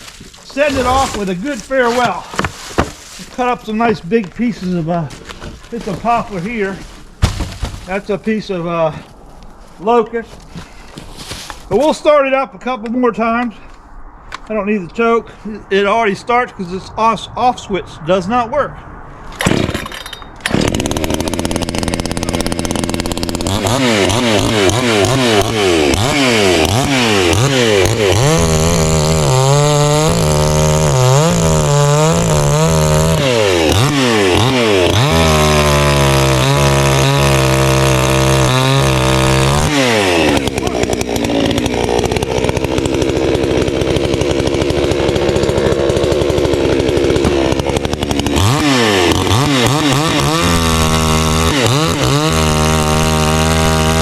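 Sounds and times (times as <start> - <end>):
chainsaw engine revving: 0.0 - 3.9, 19.4 - 54.0.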